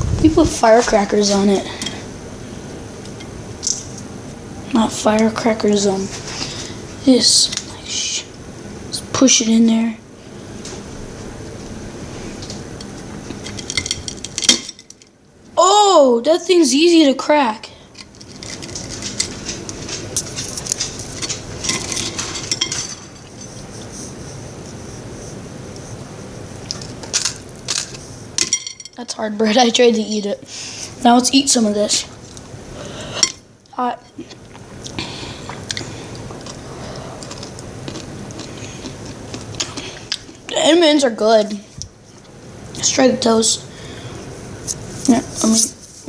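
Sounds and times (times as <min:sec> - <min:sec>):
candy clinking and scraping on plate: 0:18.0 - 0:23.8
person chewing crunchy candy: 0:34.2 - 0:40.5.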